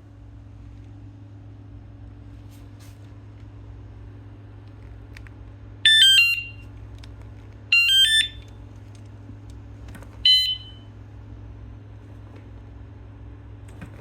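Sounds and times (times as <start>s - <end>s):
steady low hum: 0.0s - 14.0s
chirping alarm tone bursts: 5.9s - 6.6s, 7.7s - 8.4s, 10.3s - 10.8s.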